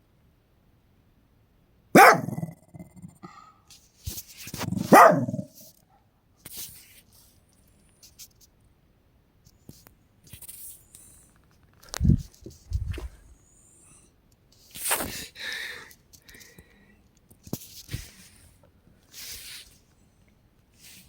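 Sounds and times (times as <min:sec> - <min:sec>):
dog barking: 0:02.0 - 0:02.6, 0:04.7 - 0:06.1.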